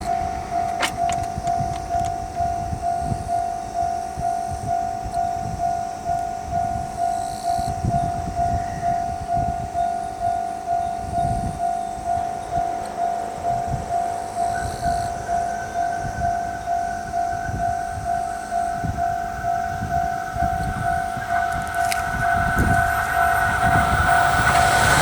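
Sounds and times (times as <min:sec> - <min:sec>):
level crossing warning bell: 0:00.0 - 0:25.0.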